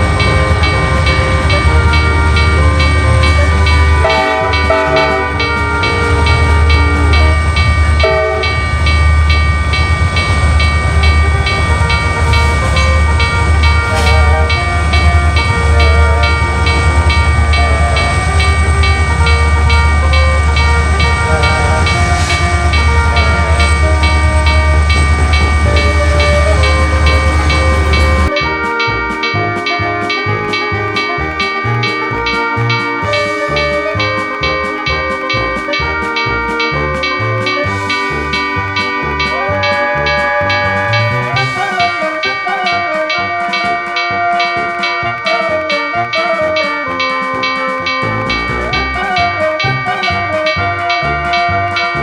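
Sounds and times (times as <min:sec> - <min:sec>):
long horn-like tones: 0:00.0 - 0:08.7
crossing bell ringing: 0:00.0 - 0:52.0
passing train rumble: 0:00.0 - 0:52.0
short tune-like notes: 0:00.0 - 0:52.0.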